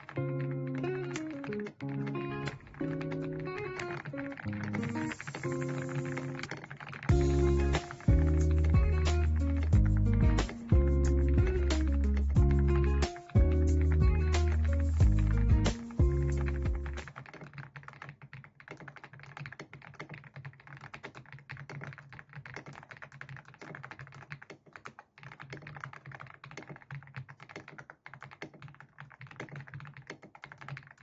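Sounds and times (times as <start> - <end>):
music track: 0.0 - 6.5, 7.1 - 17.0
typing on mechanical keyboard: 0.0 - 31.0.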